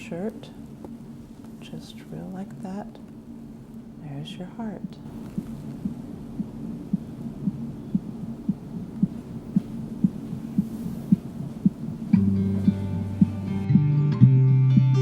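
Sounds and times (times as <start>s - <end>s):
low hum: 0.0s - 13.9s
heartbeat through stethoscope: 4.8s - 13.9s
guitar music: 12.2s - 15.0s.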